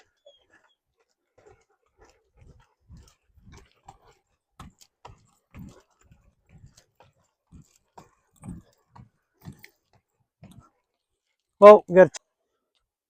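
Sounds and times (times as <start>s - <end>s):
soft dog noises: 0.0s - 10.8s.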